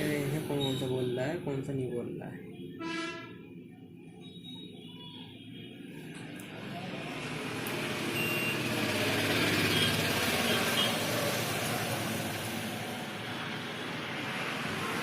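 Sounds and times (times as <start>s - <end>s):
vehicle passing: 6.5s - 15.0s
multimeter continuity beeps: 8.2s - 8.7s.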